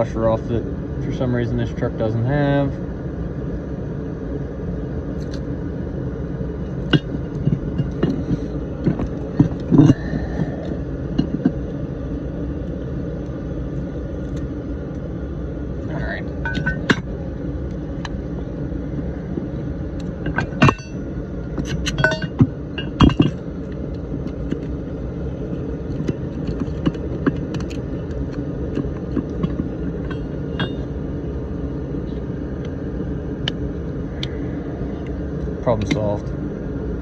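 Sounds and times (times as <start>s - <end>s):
heater rumbling: 0.0s - 37.0s
metal parts and tools clinking: 21.7s - 23.4s.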